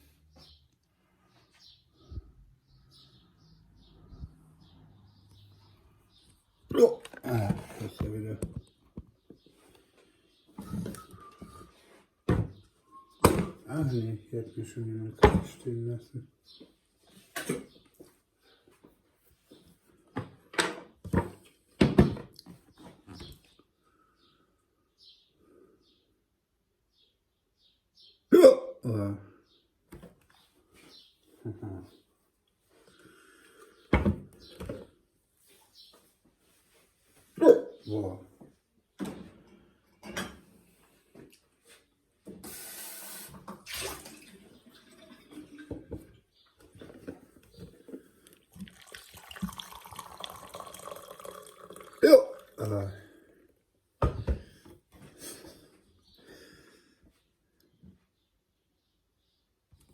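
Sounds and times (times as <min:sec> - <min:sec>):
person hiccuping: 0:06.7 - 0:07.4, 0:28.3 - 0:29.2, 0:52.0 - 0:52.9
water pouring: 0:42.8 - 0:45.9, 0:48.5 - 0:52.6.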